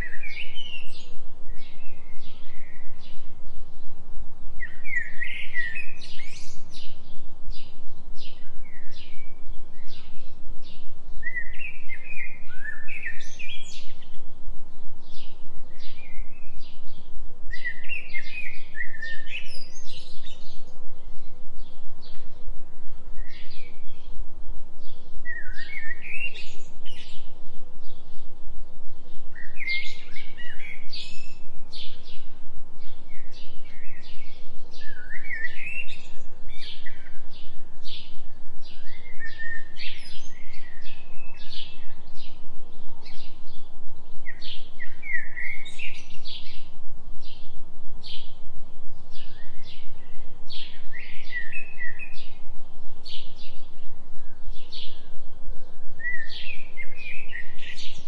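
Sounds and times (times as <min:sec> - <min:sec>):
birds chirping: 0:00.0 - 0:58.0.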